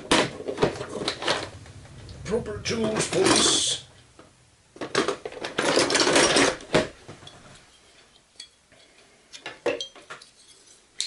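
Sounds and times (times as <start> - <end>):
metal hand tools clattering: 5.0 - 6.6.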